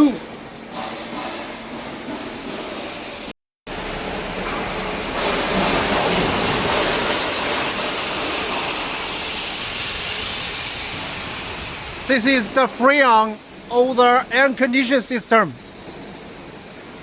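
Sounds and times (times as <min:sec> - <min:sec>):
refrigerant hissing out: 0:03.7 - 0:17.0.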